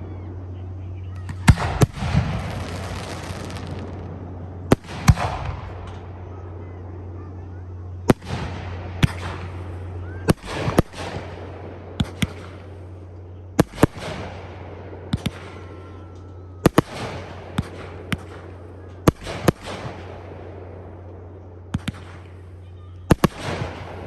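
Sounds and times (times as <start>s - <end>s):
low hum: 0.0s - 24.0s
crackling hiss of fireworks: 1.2s - 6.3s, 8.0s - 24.0s
firework bangs: 1.3s - 6.2s, 8.1s - 13.0s, 13.6s - 16.0s, 16.6s - 21.0s, 21.7s - 24.0s.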